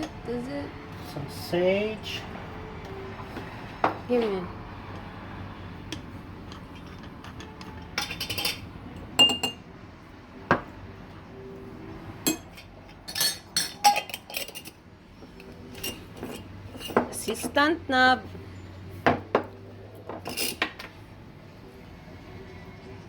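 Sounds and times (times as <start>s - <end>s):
dishes and utensils clinking: 5.9s - 9.6s, 12.2s - 17.8s, 19.0s - 21.0s.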